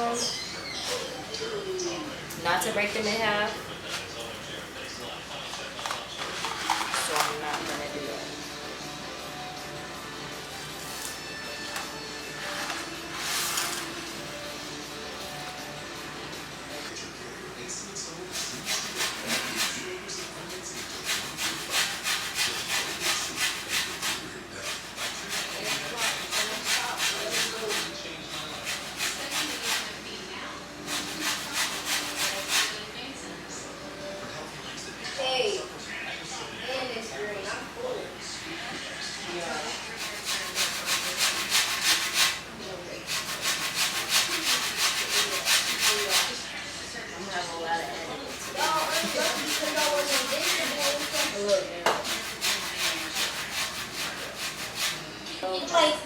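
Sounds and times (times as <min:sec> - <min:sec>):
lemon rind rasping on grater: 0:18.3 - 0:30.0, 0:30.8 - 0:32.8, 0:40.0 - 0:42.4, 0:43.1 - 0:46.4, 0:48.2 - 0:55.0.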